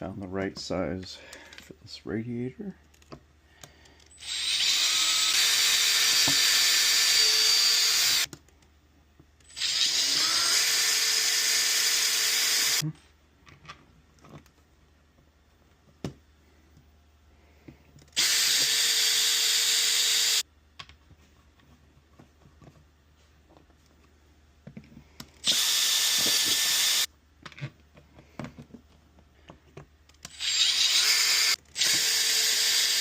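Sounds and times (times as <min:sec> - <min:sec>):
power drill running: 0:04.2 - 0:08.3, 0:09.5 - 0:12.8, 0:18.2 - 0:20.4, 0:25.4 - 0:27.1, 0:30.3 - 0:33.0.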